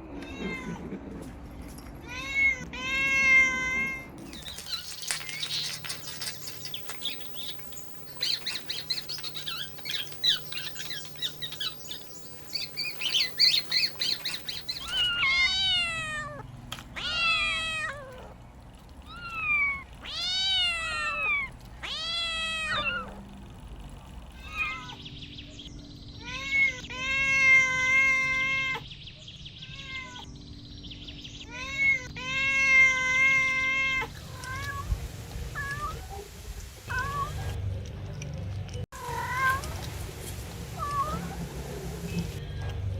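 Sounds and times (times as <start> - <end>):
kittens meowing: 2.1 - 16.4, 17.0 - 18.4, 19.1 - 23.2
high-pitched chirping: 4.2 - 15.3.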